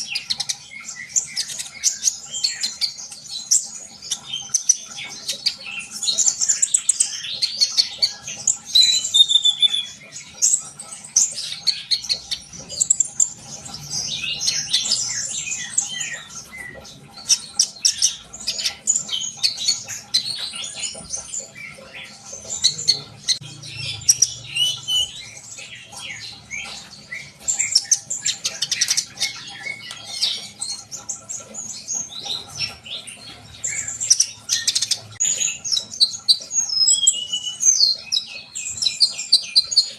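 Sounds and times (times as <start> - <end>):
sunbird chirping and trilling: 0.0 - 39.9.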